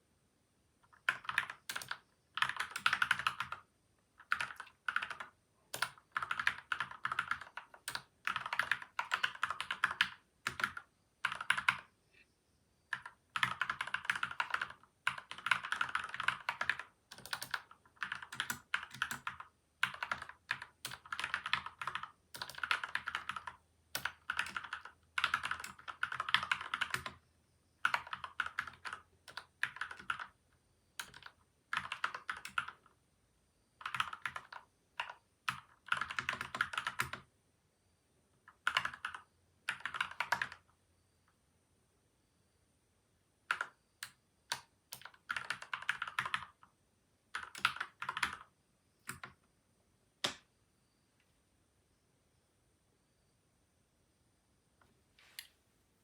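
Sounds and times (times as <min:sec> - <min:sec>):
mechanical keyboard typing: 0:00.8 - 0:11.9, 0:12.9 - 0:27.2, 0:27.8 - 0:30.4, 0:31.0 - 0:32.9, 0:33.8 - 0:37.3, 0:38.5 - 0:40.7, 0:43.5 - 0:46.7, 0:47.3 - 0:49.4.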